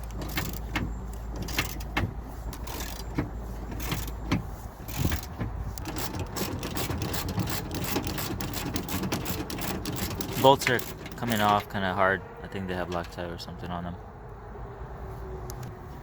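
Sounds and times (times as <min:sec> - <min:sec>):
wrench clicking on bolts: 0:00.0 - 0:11.7.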